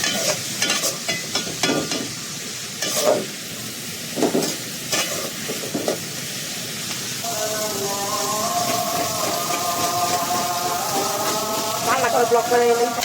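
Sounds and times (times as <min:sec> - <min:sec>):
food sizzling in a pan: 0:00.0 - 0:13.0
utensil scraping a pan: 0:02.8 - 0:03.3, 0:04.2 - 0:06.0.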